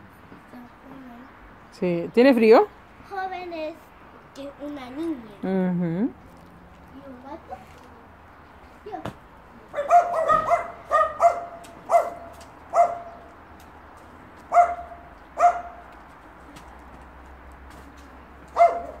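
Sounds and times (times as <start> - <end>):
small dog barking: 9.7 - 13.3, 14.5 - 15.9, 18.5 - 19.0.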